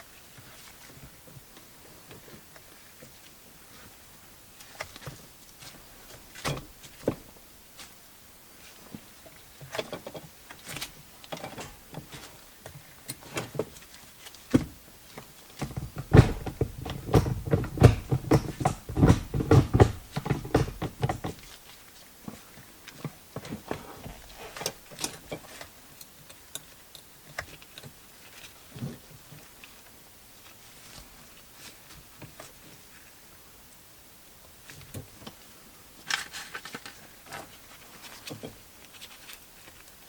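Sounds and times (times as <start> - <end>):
clicks and knocks on handbrake lever: 15.6 - 21.4.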